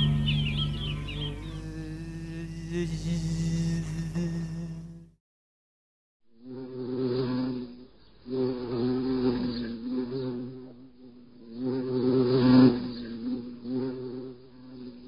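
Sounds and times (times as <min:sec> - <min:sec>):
wasp buzzing in flight: 0:06.5 - 0:15.0.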